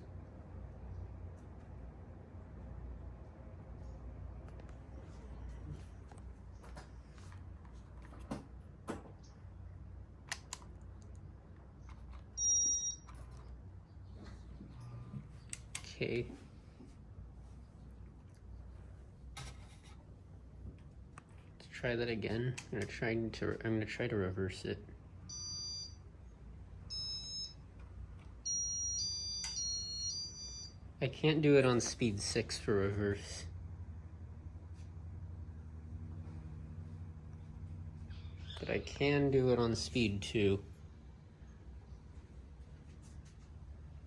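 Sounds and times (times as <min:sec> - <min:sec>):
low steady hum: 0:00.0 - 0:44.0
sharp clicks: 0:10.3 - 0:11.3
two-tone electronic beep: 0:12.4 - 0:13.1, 0:25.3 - 0:26.0, 0:26.9 - 0:27.6, 0:28.5 - 0:30.8.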